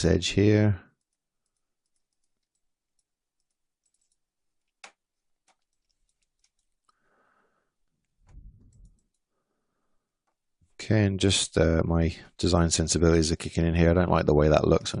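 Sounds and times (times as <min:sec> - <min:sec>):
computer mouse and keyboard clicks: 0:01.0 - 0:07.0, 0:08.0 - 0:09.3.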